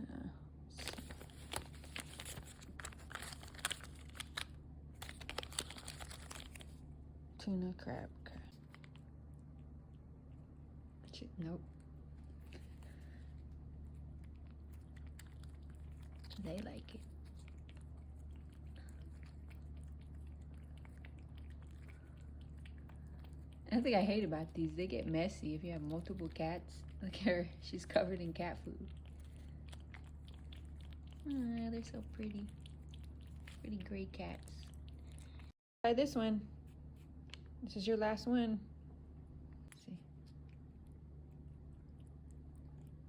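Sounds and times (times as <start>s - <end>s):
low hum: 0.0s - 43.0s
plastic packaging crinkling: 0.8s - 6.8s
cats lapping wet smacking: 11.8s - 35.6s.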